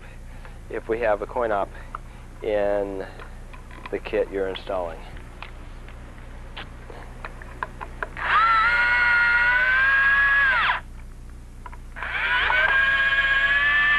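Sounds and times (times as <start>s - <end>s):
handling clicks and taps: 7.2s - 8.2s
electric drill motor whine: 8.2s - 10.9s, 11.9s - 13.9s.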